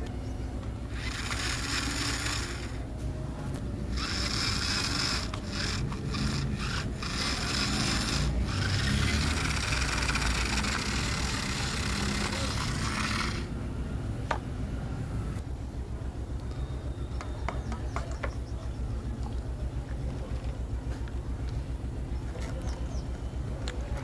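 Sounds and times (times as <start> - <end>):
rasping scraping noise: 0.9 - 2.8, 3.9 - 13.5.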